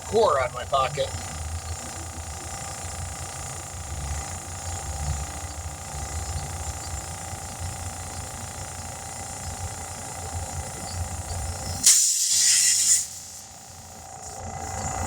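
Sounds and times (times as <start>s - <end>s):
compressed air hissing from tire valve: 9.6s - 15.0s.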